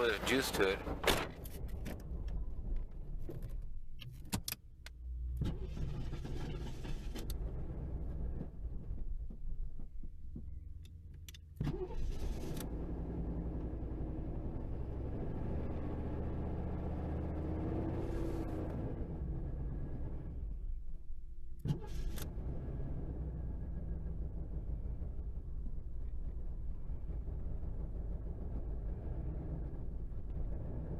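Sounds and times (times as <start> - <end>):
car engine revving: 11.6 - 20.6, 21.6 - 30.9.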